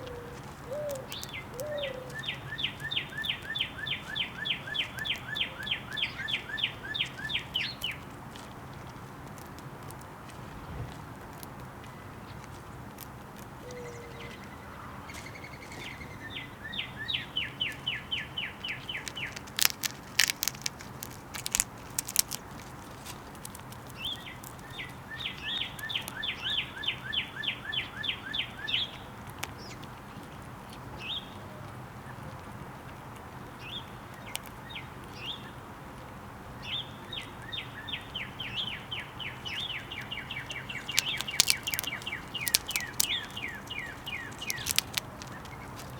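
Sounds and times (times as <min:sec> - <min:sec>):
songbird whistling: 0:00.0 - 0:07.8.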